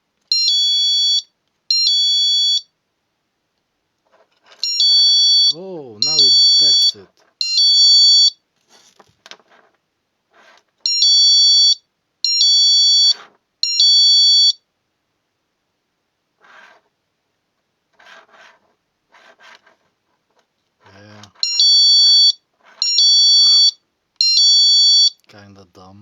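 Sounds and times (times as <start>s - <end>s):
high-pitched alarm shrieking: 4.7s - 7.0s
handling rubs and clicks: 17.9s - 21.4s.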